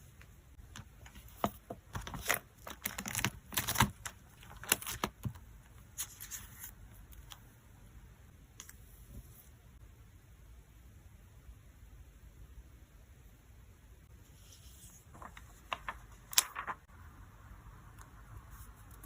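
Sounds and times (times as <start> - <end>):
plastic packing crinkling: 1.0 - 5.4.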